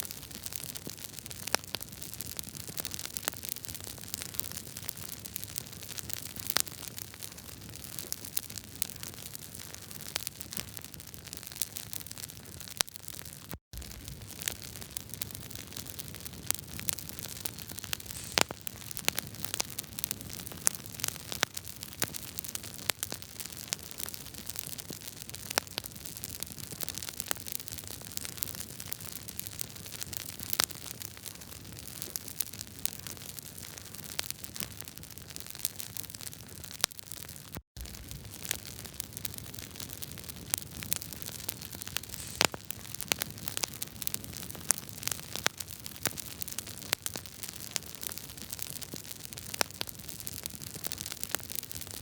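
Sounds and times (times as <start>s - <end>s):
wood fire crackling: 13.8s - 36.9s, 37.8s - 52.0s.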